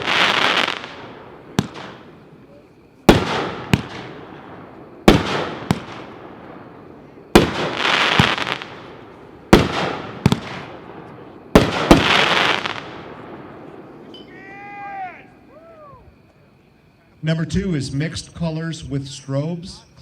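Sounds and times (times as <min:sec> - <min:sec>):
firework crackling hiss: 0:00.0 - 0:15.7
firework shells bursting: 0:03.1 - 0:06.3, 0:07.3 - 0:10.9, 0:11.5 - 0:13.0.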